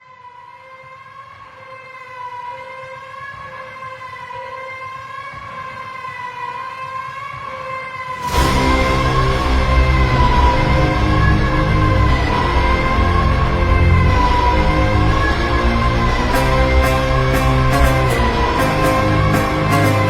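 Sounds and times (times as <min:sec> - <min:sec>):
siren-like wailing tone: 0:07.5 - 0:20.0
loud music: 0:08.2 - 0:20.0.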